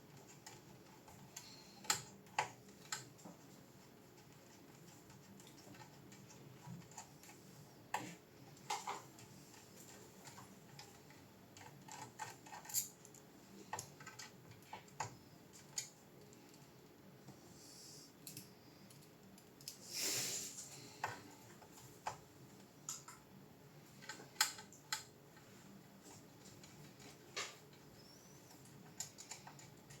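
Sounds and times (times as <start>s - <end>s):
faint steady hum: 0.0s - 30.0s
small clicks and taps: 0.1s - 3.6s, 4.2s - 17.4s, 21.0s - 23.3s, 24.0s - 30.0s.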